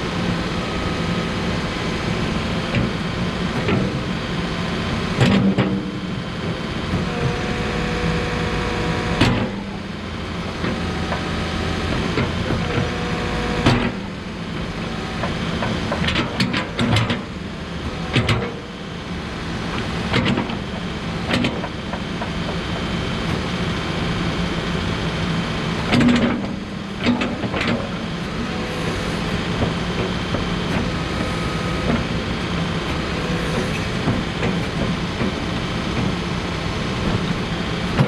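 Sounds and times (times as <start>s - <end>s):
diesel engine running: 0.0s - 38.0s.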